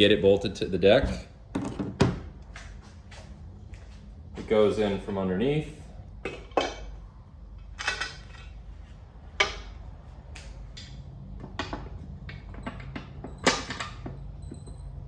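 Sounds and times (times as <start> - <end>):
metallic clinks and knocks: 10.8 - 15.0.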